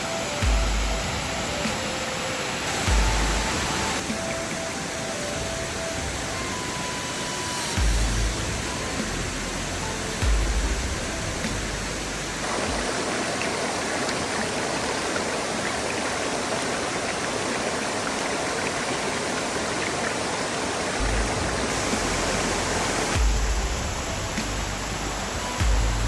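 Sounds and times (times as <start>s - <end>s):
waterfall rushing over rocks: 0.0s - 26.0s
low thumps: 23.2s - 24.6s.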